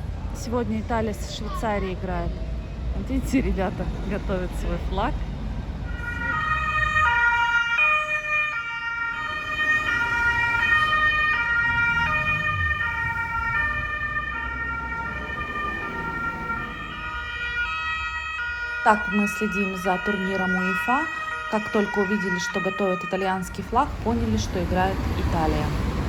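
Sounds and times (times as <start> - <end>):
road traffic rumble: 0.0 - 26.0
two-tone emergency siren: 5.8 - 26.0.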